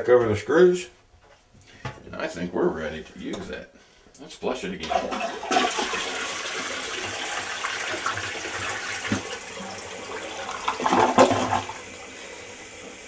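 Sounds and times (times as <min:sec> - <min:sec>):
toilet flushing: 0:04.7 - 0:13.0.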